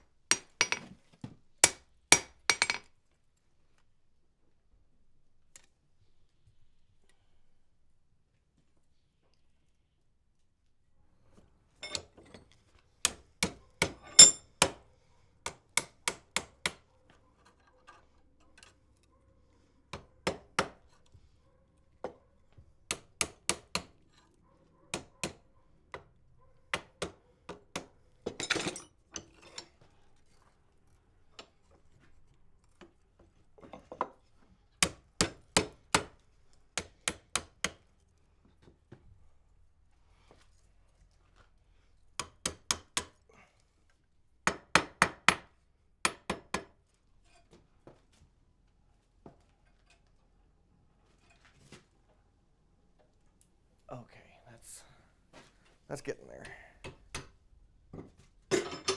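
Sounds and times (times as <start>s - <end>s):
hammer striking iron on anvil: 13.8s - 14.8s.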